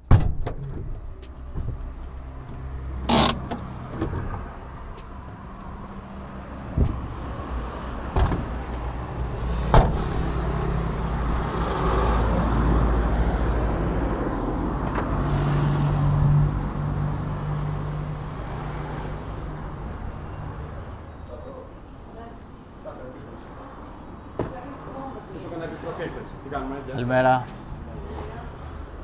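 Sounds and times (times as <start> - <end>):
motor vehicle hum: 0.0 - 20.8
sharp knocks: 9.6 - 10.4.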